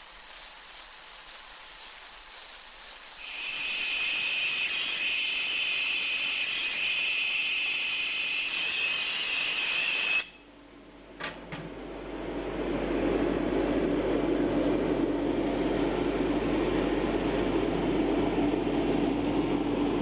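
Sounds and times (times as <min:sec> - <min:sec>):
gas torch flame hissing: 0:00.0 - 0:10.2.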